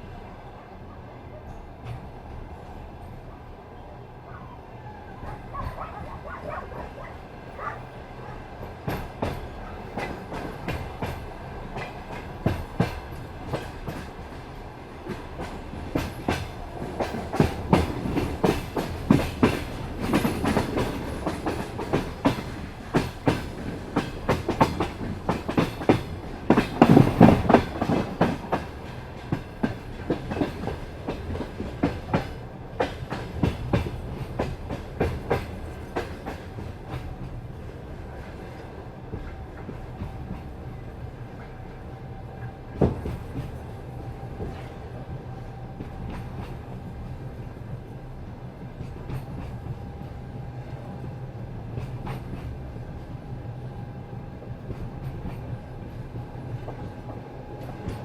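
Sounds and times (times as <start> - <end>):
train wheels clattering over rail joints: 5.3 - 37.5.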